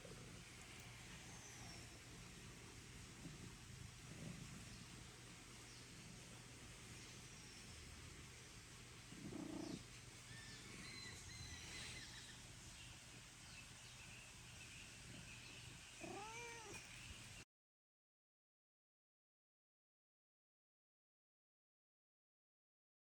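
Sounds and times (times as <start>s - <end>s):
cat meowing: 16.0s - 16.8s.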